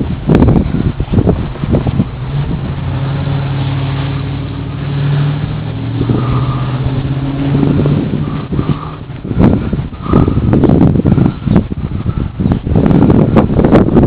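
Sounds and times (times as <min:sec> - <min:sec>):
car engine running: 0:00.0 - 0:14.0.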